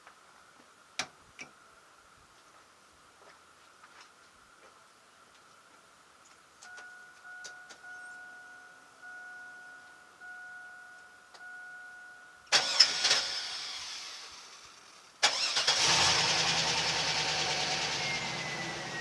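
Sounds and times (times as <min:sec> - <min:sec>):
dashboard warning chime: 0:06.7 - 0:12.5
engine idling: 0:15.3 - 0:19.0.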